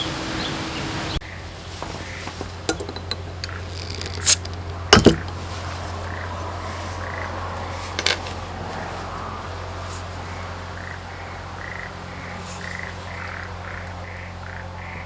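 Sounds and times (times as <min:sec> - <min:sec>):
object set down hard: 0:01.8 - 0:03.2, 0:04.2 - 0:05.5
dishes clinking: 0:02.7 - 0:03.5.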